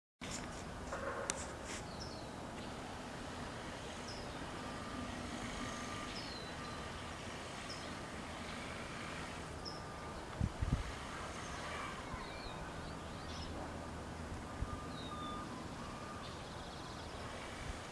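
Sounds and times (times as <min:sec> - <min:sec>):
traffic rumble: 0:00.2 - 0:17.9
small birds chirping: 0:01.4 - 0:02.9, 0:03.6 - 0:17.9.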